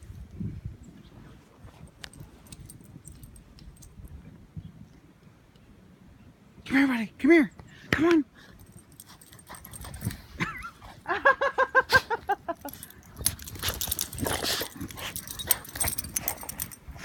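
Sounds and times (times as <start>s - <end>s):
dog scuffling and snuffling in snow: 13.4s - 17.0s.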